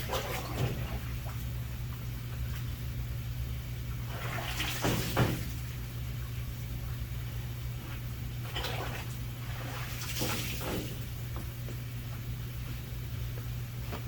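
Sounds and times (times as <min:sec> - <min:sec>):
washing equipment hum: 0:00.0 - 0:14.0
water splashing on metal: 0:04.1 - 0:05.8, 0:08.5 - 0:11.2.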